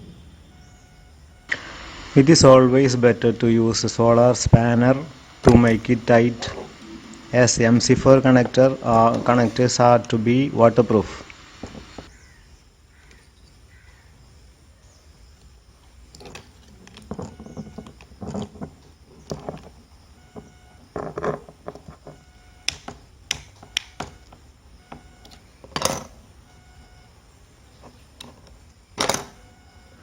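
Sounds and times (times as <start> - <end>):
plastic parts clicking and knocking: 16.1 - 26.1.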